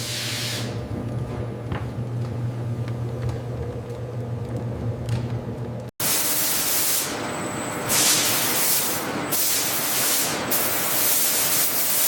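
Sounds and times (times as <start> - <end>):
low machine hum: 0.0 - 5.9
spray hissing: 6.0 - 7.2, 7.8 - 12.0.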